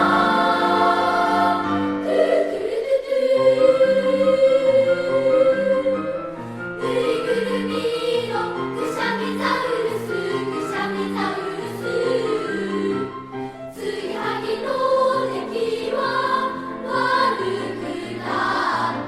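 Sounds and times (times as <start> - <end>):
children's choir singing: 0.0 - 19.0.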